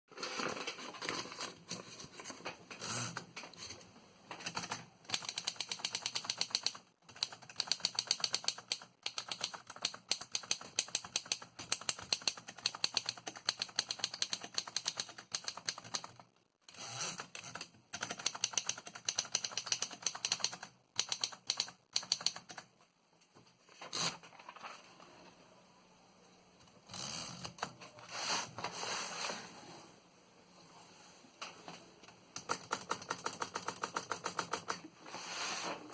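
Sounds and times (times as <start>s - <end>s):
typewriter keys clacking: 4.4s - 16.2s, 17.4s - 22.7s, 32.4s - 34.8s.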